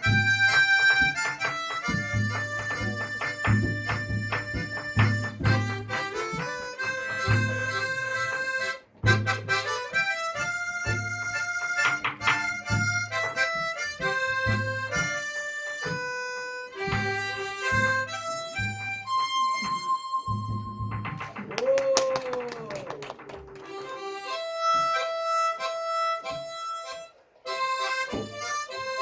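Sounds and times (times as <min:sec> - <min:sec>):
harmonica melody: 0:00.0 - 0:21.3, 0:23.6 - 0:29.0.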